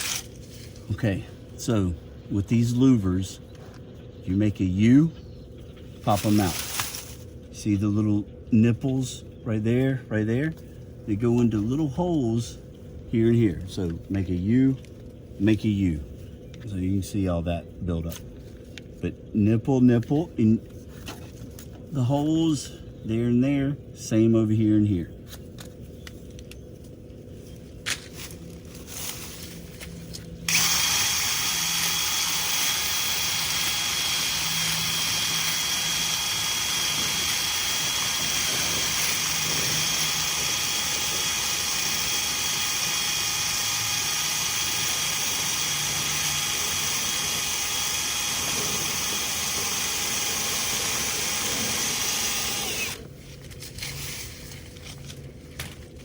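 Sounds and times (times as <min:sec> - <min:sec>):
power drill whining: 0:30.5 - 0:53.0.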